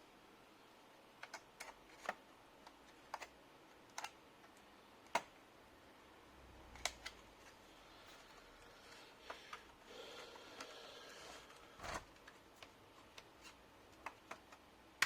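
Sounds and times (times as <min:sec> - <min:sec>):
plastic laptop parts clicking: 0:01.2 - 0:05.4, 0:06.7 - 0:07.2, 0:11.8 - 0:15.0.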